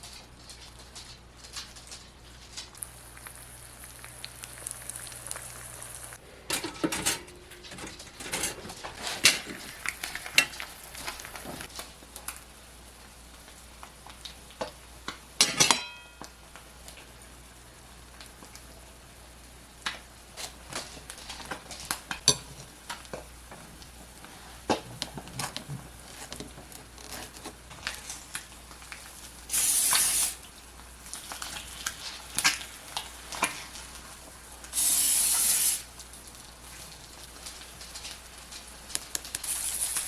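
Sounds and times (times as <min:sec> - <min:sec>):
utensils and dishes clinking: 0:06.4 - 0:11.6, 0:15.4 - 0:16.3
short bursts of hissing: 0:29.5 - 0:30.4, 0:34.7 - 0:35.9, 0:39.4 - 0:40.0.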